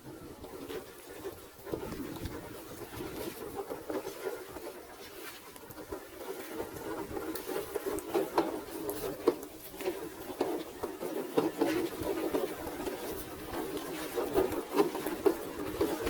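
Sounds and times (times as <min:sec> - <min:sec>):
rc car clattering over rocks: 0:05.5 - 0:16.0.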